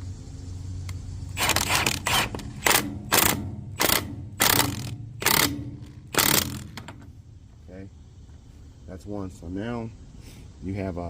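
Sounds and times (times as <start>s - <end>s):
ratchet wrench clicking: 1.3s - 7.1s.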